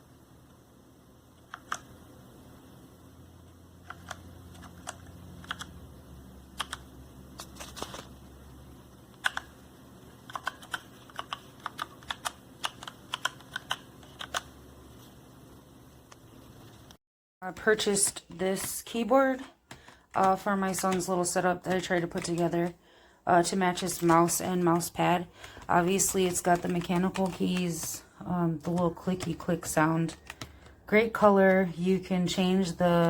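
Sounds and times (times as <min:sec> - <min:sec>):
mechanical keyboard clicks: 0:03.9 - 0:05.8, 0:06.6 - 0:06.9, 0:09.2 - 0:09.5, 0:10.3 - 0:14.5.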